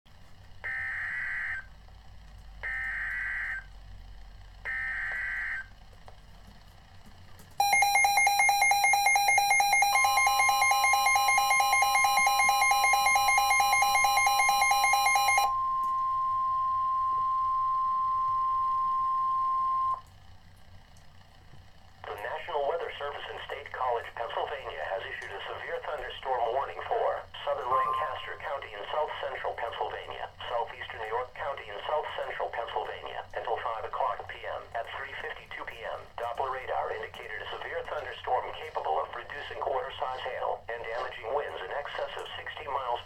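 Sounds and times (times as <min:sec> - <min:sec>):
rapidly pulsing receiver alarm: 0:00.6 - 0:01.8, 0:02.6 - 0:03.8, 0:04.6 - 0:05.8, 0:07.6 - 0:20.1, 0:22.2 - 0:34.5
steady single-pitch alert tone: 0:07.6 - 0:20.0, 0:27.7 - 0:28.2.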